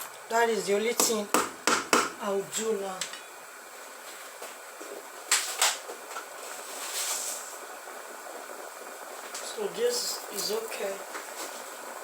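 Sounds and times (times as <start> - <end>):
low steady hiss: 0.0 - 12.0
sharp taps: 1.0 - 2.2.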